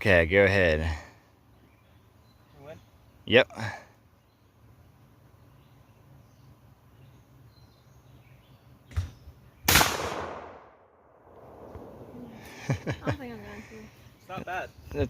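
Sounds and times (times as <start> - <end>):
shotgun shot: 9.7 - 12.2.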